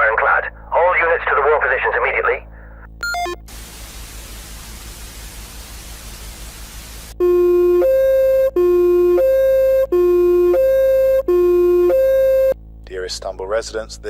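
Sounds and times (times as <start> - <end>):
falling run of beeps: 3.0 - 3.4, 7.2 - 12.6
static hiss: 3.0 - 8.2
buzzy two-tone alarm: 7.2 - 12.6.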